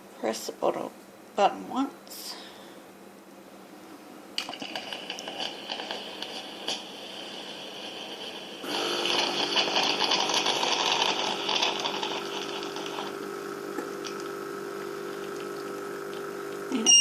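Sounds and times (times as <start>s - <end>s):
water hissing into bottle: 4.4s - 16.7s
pump humming: 8.6s - 17.0s.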